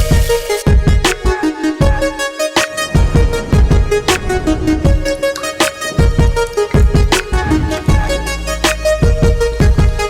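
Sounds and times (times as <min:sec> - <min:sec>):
heavy kick drum: 0:02.7 - 0:08.2.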